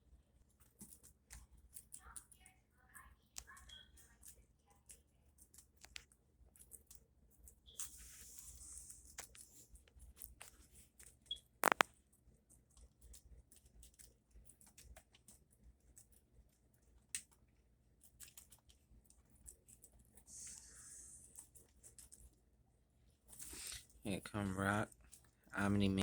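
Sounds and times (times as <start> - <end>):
guinea pigs chewing lettuce: 0.0 - 26.0
sharp click: 11.6 - 11.9.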